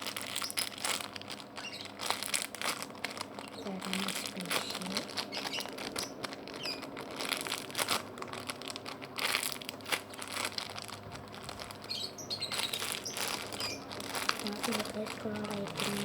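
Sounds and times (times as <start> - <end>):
squishy toy crinkling and crumpling: 0.0 - 16.0.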